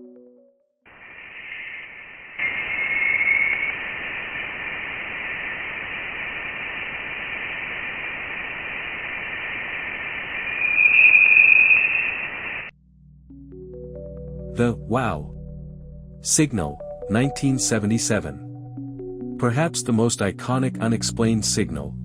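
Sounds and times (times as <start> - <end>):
high whistling tones: 0.9 - 5.4, 9.4 - 12.7
steady hiss: 0.9 - 12.7.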